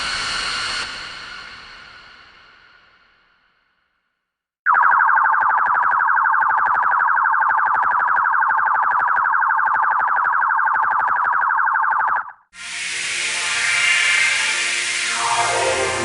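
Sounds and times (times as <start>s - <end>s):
pulsing electronic alarm tone: 4.7s - 16.0s.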